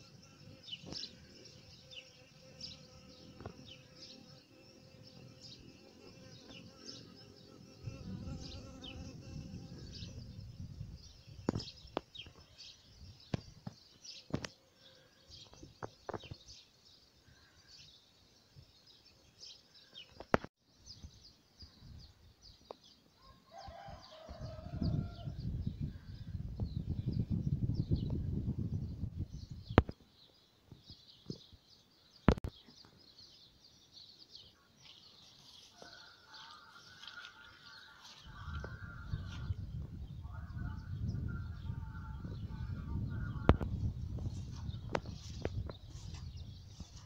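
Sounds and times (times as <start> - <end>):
insect buzzing: 0.0 - 12.4
small birds chirping: 0.0 - 47.0.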